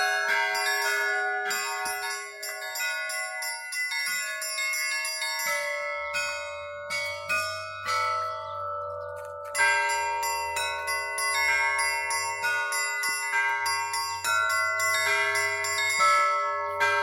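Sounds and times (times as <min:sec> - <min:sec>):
lower bell ringing: 0:00.0 - 0:17.0
small high-pitched bells ringing: 0:00.0 - 0:17.0.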